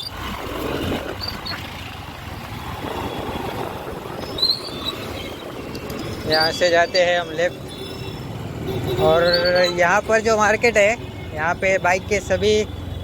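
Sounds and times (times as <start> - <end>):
wind rush: 0.0 - 6.7
road and traffic noise: 0.0 - 13.0.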